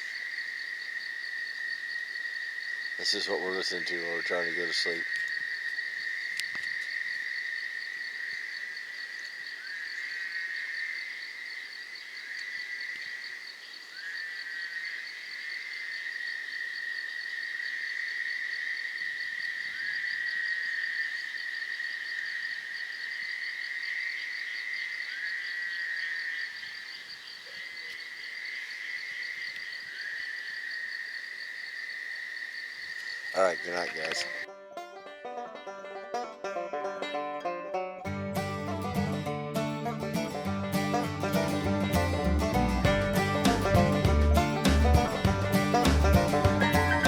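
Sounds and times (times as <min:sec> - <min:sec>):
insects pulsing buzz: 0:00.0 - 0:34.5
frogs trilling: 0:00.0 - 0:34.6.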